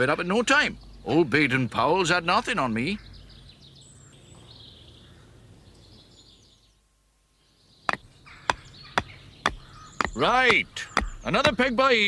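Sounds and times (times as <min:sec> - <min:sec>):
faint birdsong chirps: 0:00.0 - 0:12.0
quiet country ambience: 0:00.0 - 0:12.0
hammer knocking tent peg: 0:07.9 - 0:11.8.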